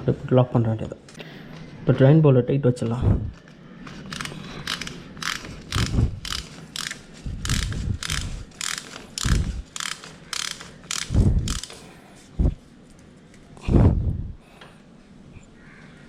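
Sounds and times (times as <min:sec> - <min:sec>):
ratchet wrench clicking: 0:04.1 - 0:11.8.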